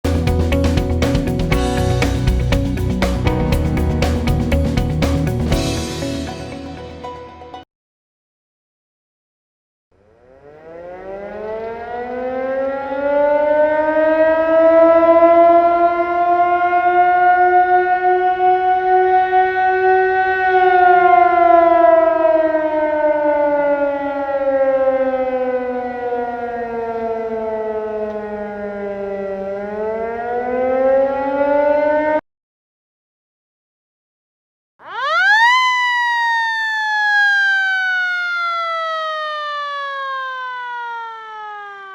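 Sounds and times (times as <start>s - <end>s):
siren wailing: 10.0s - 32.2s, 34.8s - 41.9s.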